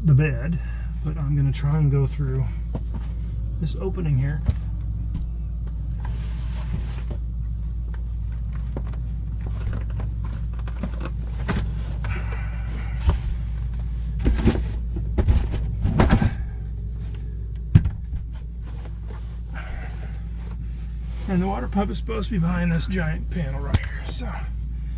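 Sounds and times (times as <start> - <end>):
steady low hum: 0.0 - 24.9
knocks and clatter of tools: 13.0 - 16.5.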